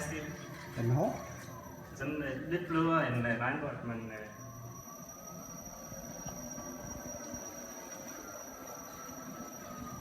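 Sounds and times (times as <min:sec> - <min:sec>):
high motor whine: 0:00.0 - 0:10.0
electric unicycle rolling rumble: 0:03.6 - 0:10.0.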